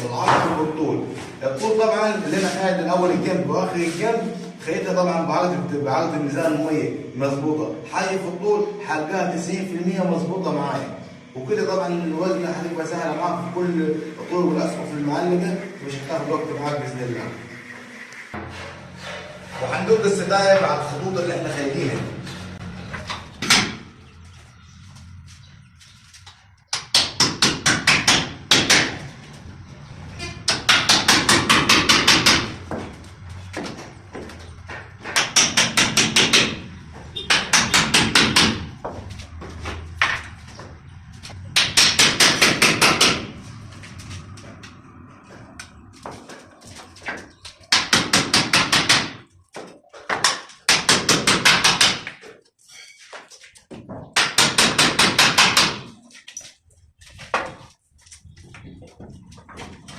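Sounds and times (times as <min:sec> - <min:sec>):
hammer driving nails: 0:22.9 - 0:23.8, 0:26.7 - 0:29.1, 0:30.4 - 0:32.9, 0:34.8 - 0:38.7, 0:41.5 - 0:43.3, 0:47.7 - 0:49.2, 0:50.1 - 0:52.3, 0:54.2 - 0:56.0.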